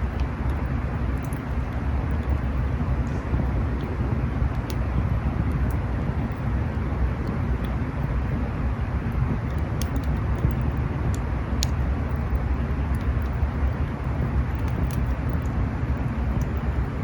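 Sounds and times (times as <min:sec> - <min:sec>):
campfire crackling and popping: 0:11.6 - 0:17.0.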